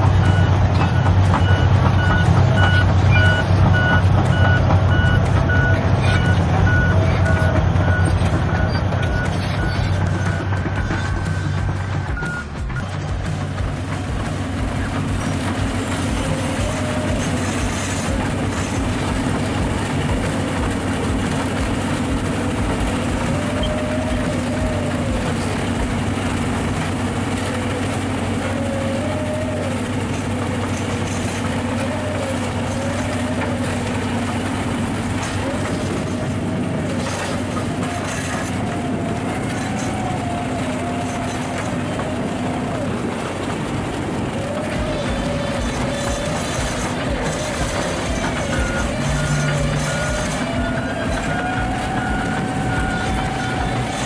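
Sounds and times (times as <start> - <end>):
diesel engine under load: 0.0 - 54.0
steel tracks rattling: 0.0 - 54.0
wavering whine: 13.8 - 54.0.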